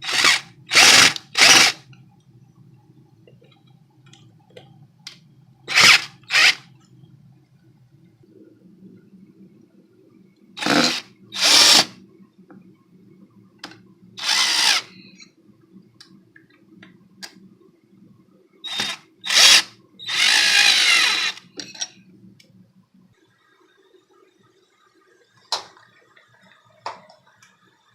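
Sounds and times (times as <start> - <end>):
power drill running: 0.0 - 1.8, 5.7 - 6.6, 10.6 - 11.9, 14.2 - 14.9, 18.7 - 21.4
faint low hum: 0.0 - 27.9.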